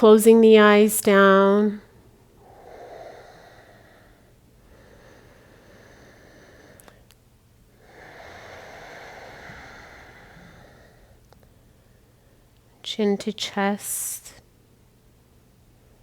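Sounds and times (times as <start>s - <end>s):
deep breathing close up: 2.2s - 12.6s.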